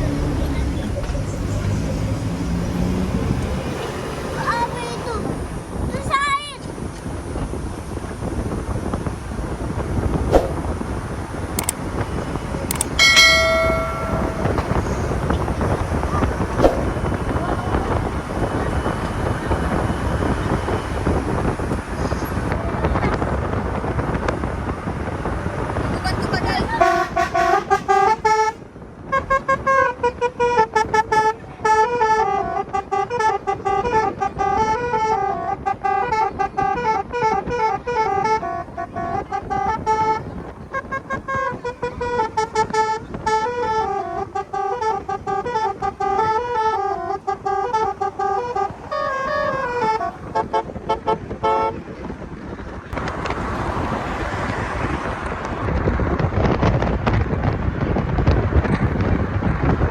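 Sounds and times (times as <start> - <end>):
wind noise on microphone: 0.0 - 59.9
bus horn playing a tune: 11.6 - 22.8, 26.6 - 51.9.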